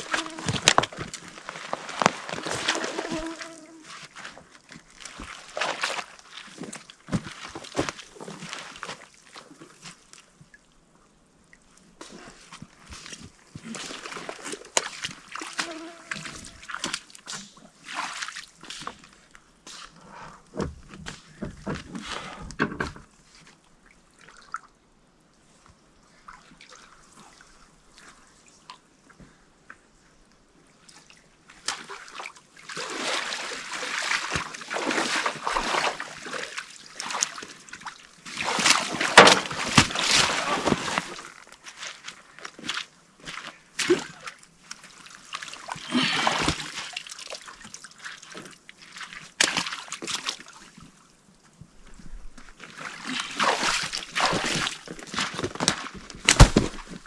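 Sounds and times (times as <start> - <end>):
water sloshing and splashing: 0.0 - 10.7, 11.6 - 19.4, 30.9 - 57.0.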